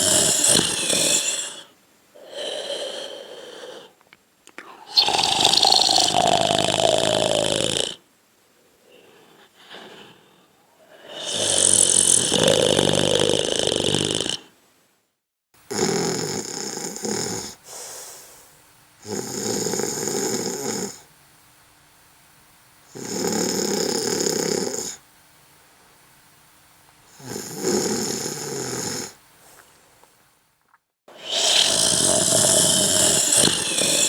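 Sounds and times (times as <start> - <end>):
person snoring: 0.0 - 4.0, 4.6 - 8.0, 8.9 - 14.6, 15.7 - 18.3, 19.0 - 21.0, 22.9 - 25.0, 27.1 - 29.6, 31.1 - 34.0.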